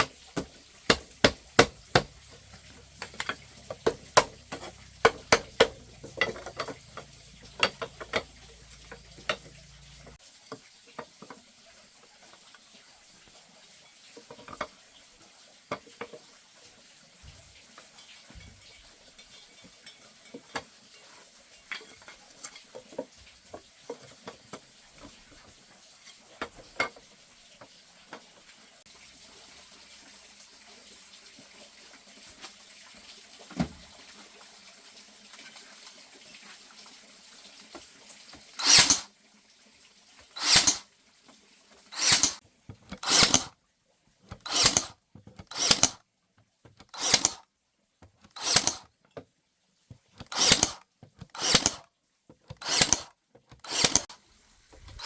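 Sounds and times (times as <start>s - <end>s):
hand tool rasping bamboo: 0.0s - 10.2s, 38.6s - 39.1s, 40.4s - 40.8s, 41.9s - 43.5s, 44.3s - 46.0s, 46.8s - 47.4s, 48.3s - 48.9s, 50.2s - 51.8s, 52.5s - 54.2s.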